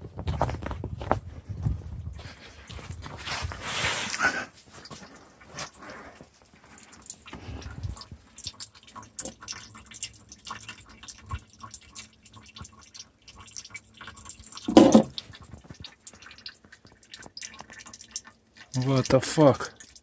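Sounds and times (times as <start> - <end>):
water dripping: 4.1 - 20.0.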